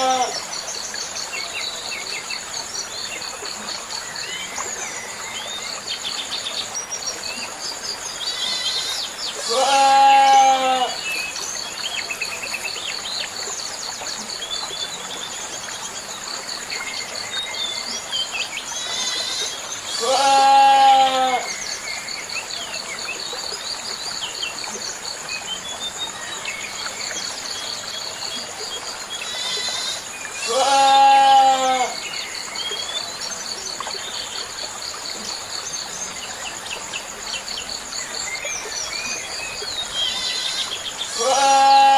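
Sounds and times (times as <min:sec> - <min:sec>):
goat bleating: 0:09.4 - 0:10.9, 0:29.4 - 0:31.9, 0:41.2 - 0:41.9.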